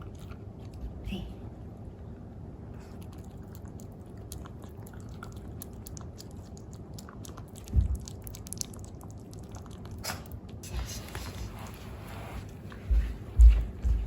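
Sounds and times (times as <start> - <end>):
pet licking and smacking: 2.8 - 12.3.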